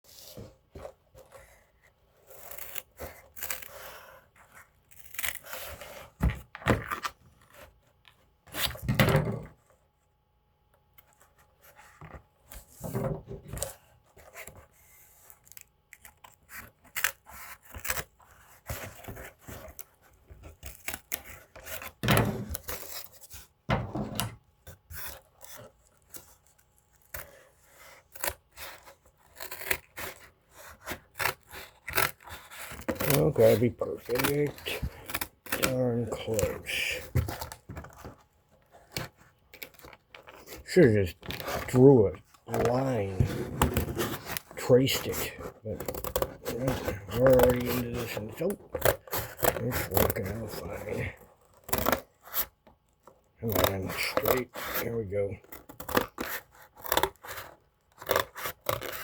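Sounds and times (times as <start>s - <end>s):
scraping and rustling: 31.9s - 51.2s.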